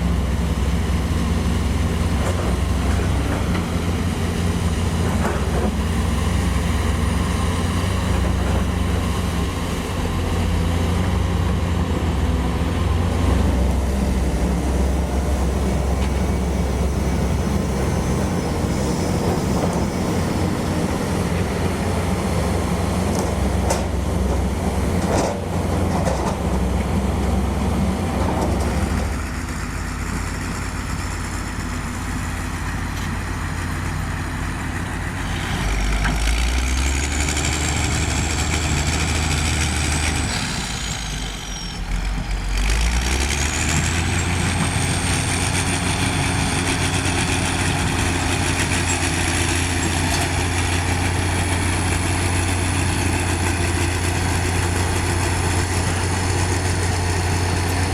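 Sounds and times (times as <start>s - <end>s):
diesel engine running: 0.0s - 57.9s.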